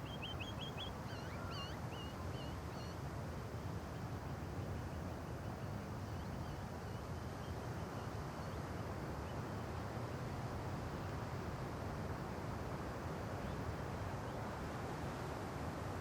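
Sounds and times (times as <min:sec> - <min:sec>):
faint bird chirps: 0:00.0 - 0:03.0, 0:04.3 - 0:08.6
wind rustling leaves in trees: 0:00.0 - 0:16.0.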